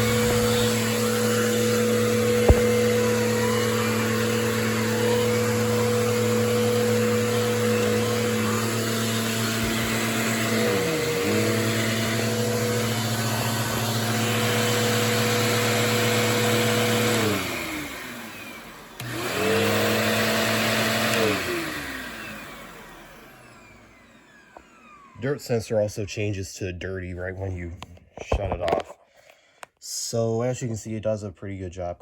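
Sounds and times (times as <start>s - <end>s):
upright vacuum motor hum: 0.0s - 25.2s.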